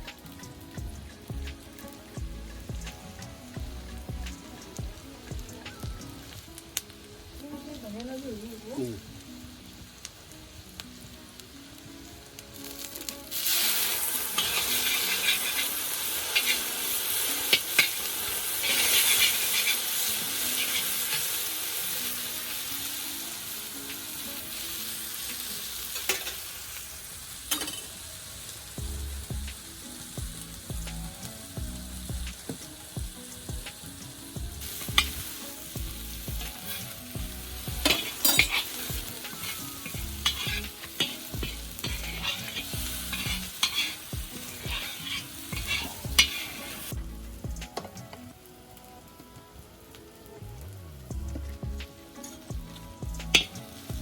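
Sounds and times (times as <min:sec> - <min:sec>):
food sizzling in hot oil: 0:00.0 - 0:54.0
spoon scraping and clicking in pan: 0:37.9 - 0:46.8.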